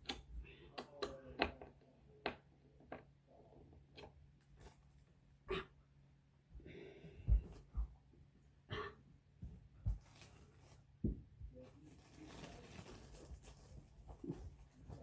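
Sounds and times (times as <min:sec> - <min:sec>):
dull thumps and knocks: 0:07.2 - 0:08.0
soft rustling: 0:09.4 - 0:15.0.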